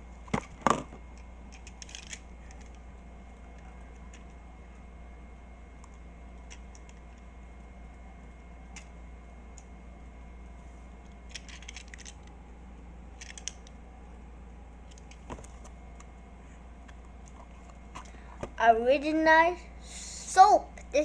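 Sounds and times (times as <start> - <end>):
steady low hum: 0.0 - 21.0
toy packaging clicks and rattles: 1.5 - 2.8, 11.1 - 12.4, 13.2 - 13.7.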